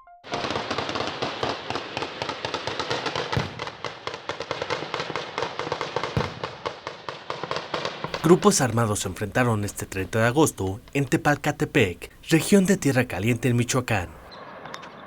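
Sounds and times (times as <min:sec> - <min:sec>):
automatic gunfire: 0:00.3 - 0:08.4.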